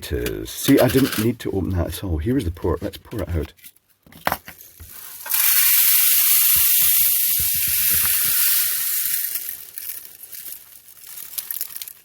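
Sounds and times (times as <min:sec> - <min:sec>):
beads pouring with rattling hiss: 0:04.6 - 0:12.0.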